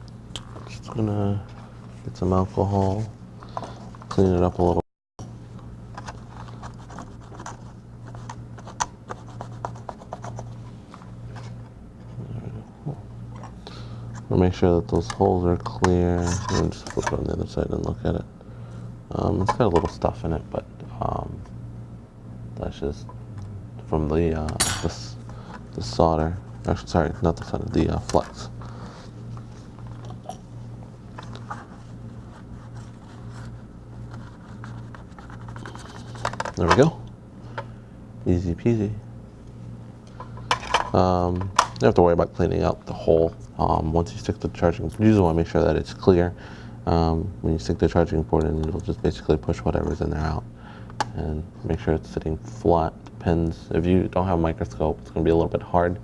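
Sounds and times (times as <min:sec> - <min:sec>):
steady low hum: 0:00.0 - 0:40.9.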